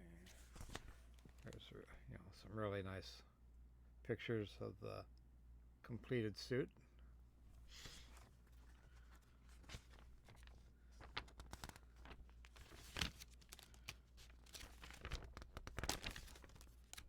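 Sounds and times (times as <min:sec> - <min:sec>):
plastic packaging rustling and crinkling: 0:07.9 - 0:17.0.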